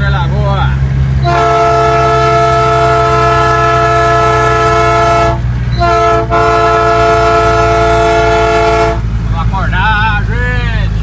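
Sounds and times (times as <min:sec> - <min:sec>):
truck engine running: 0:00.0 - 0:11.0
truck train horn blasts: 0:01.2 - 0:09.2.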